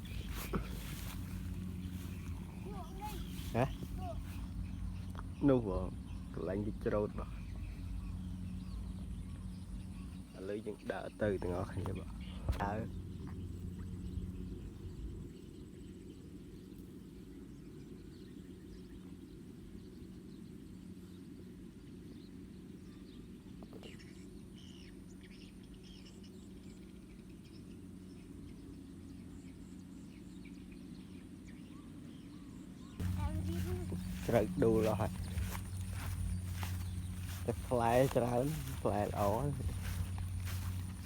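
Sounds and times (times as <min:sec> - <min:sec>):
low hum and rumble: 0:00.0 - 0:41.0
faint bird chirps: 0:22.2 - 0:41.0.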